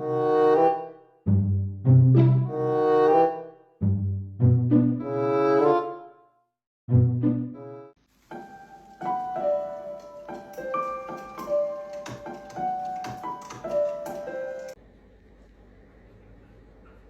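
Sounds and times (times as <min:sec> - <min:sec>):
piano melody: 0:06.9 - 0:14.8.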